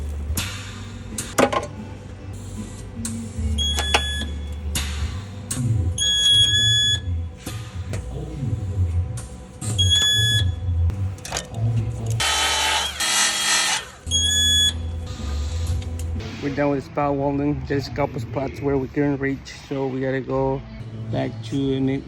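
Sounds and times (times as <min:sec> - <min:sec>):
welder tone beeps: 0:03.6 - 0:04.5, 0:06.0 - 0:07.2, 0:09.8 - 0:10.7, 0:14.1 - 0:14.9.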